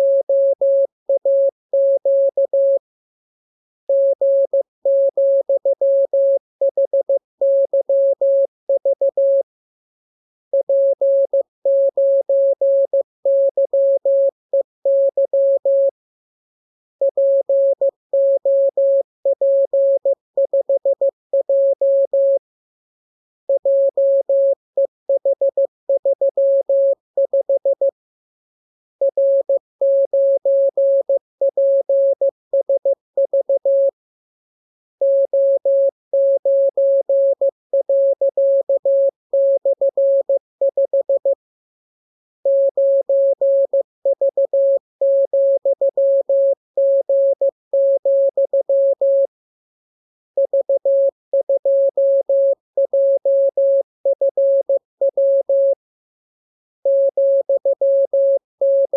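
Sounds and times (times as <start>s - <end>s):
morse code beeps: 50.4s - 50.8s.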